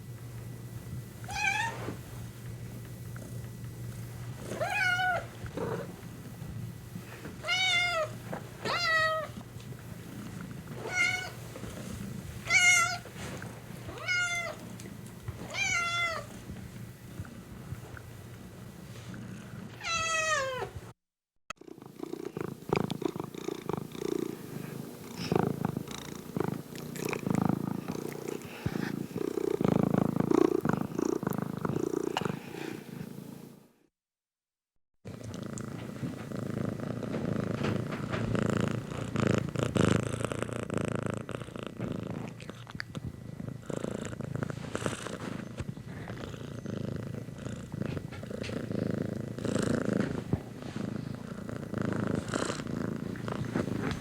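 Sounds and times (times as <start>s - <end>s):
cat purring: 0.9s - 20.6s, 21.6s - 33.4s, 35.1s - 54.0s
cat meowing: 4.6s - 5.3s, 8.7s - 9.3s, 19.8s - 20.7s.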